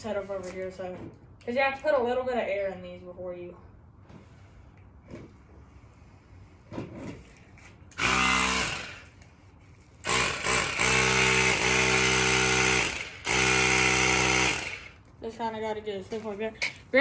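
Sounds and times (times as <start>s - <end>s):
electric air pump running: 7.9s - 9.3s, 10.0s - 15.0s.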